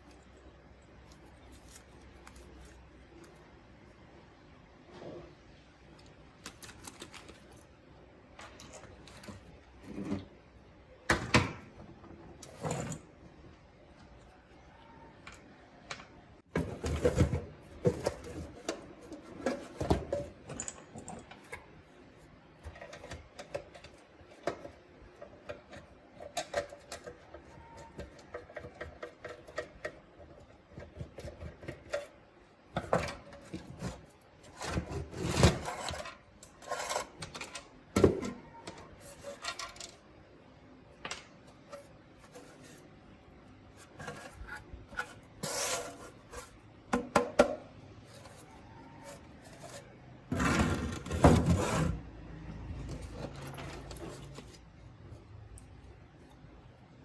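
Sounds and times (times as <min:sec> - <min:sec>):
hand tools clicking and tapping: 0:22.7 - 0:32.3.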